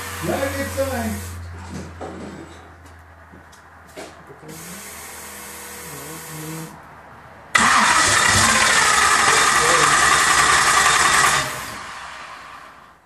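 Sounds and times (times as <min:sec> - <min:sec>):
starter motor cranking engine: 0:07.6 - 0:12.9.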